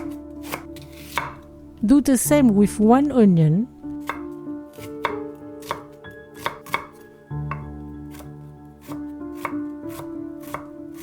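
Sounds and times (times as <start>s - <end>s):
knife chopping on cutting board: 0.0s - 1.5s, 4.0s - 11.0s
soft background music: 0.0s - 11.0s.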